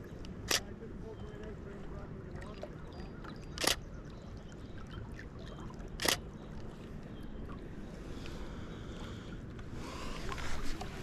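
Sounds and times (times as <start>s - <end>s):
camera shutter clacks: 0.4s - 0.6s, 3.6s - 3.8s, 6.0s - 6.2s.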